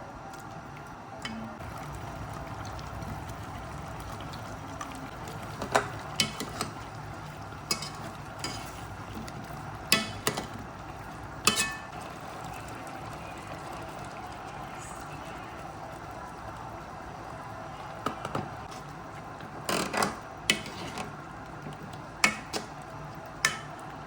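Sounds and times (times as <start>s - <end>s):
low cooking hiss: 0.0s - 24.0s
utensil clinking against pot: 5.6s - 6.8s, 7.6s - 8.8s, 11.4s - 11.9s.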